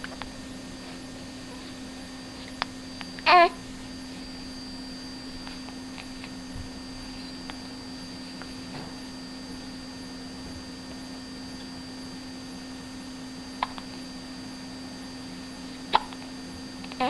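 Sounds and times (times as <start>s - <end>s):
steady background hum: 0.0s - 17.0s
person hiccuping: 15.9s - 16.2s.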